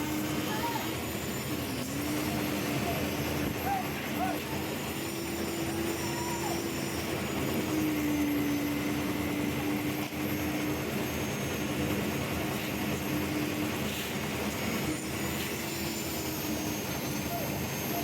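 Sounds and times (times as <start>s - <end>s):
concrete mixer engine running: 0.0s - 18.0s.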